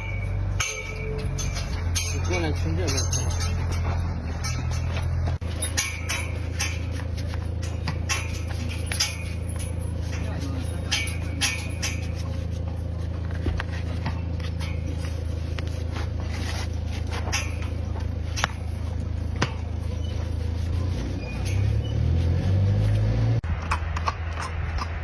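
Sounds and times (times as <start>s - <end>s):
low mechanical motor hum: 0.0s - 25.0s.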